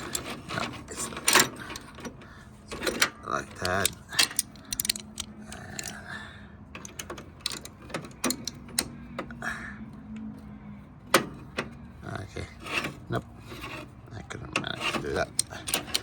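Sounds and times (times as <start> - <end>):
metal clicks and knocks: 0.0 - 6.0, 6.7 - 9.4, 11.0 - 11.8, 14.5 - 16.0.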